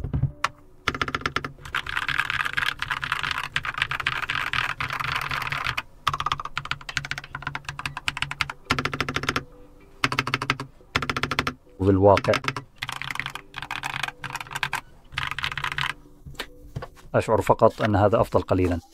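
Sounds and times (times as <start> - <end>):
mechanical keyboard typing: 0.4 - 9.4, 10.0 - 16.0.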